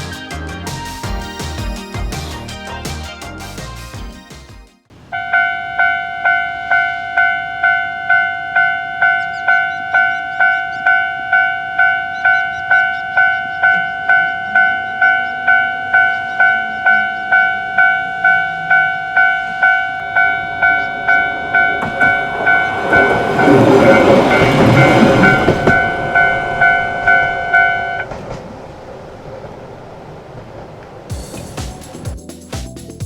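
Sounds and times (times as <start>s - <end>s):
level-crossing warning bell: 5.1s - 28.1s.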